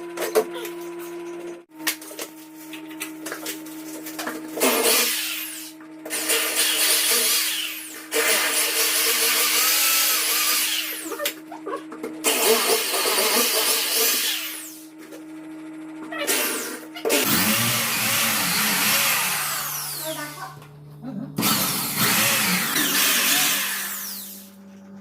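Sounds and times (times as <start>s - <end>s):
handheld power tool running: 4.6s - 11.4s, 12.2s - 15.0s, 16.2s - 20.6s, 21.4s - 24.6s.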